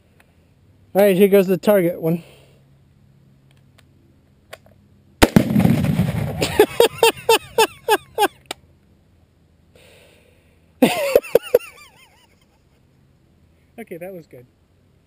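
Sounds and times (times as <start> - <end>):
explosion blast with rumble: 5.2 - 6.5
rifle shot crack: 5.2 - 6.6.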